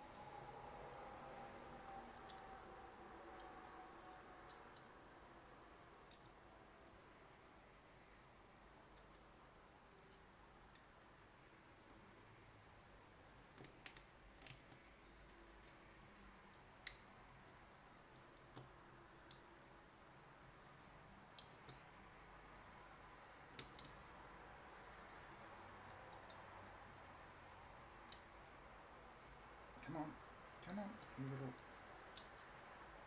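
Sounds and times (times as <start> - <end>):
faint clicks and taps of tools: 6.0 - 7.0, 13.5 - 19.6, 21.3 - 24.0, 24.8 - 27.2, 30.5 - 33.0.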